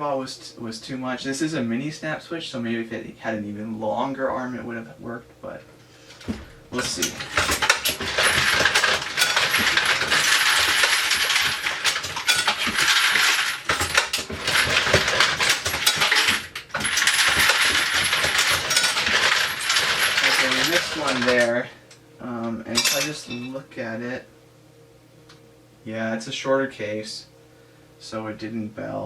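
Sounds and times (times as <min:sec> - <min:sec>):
metal cases jangling in machine: 0:06.2 - 0:21.6, 0:22.7 - 0:23.6.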